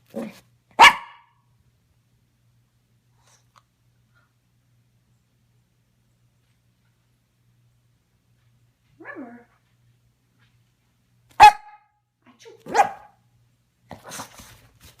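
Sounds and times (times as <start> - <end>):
dog barking: 0.2 - 1.4, 11.4 - 11.9, 12.6 - 13.2.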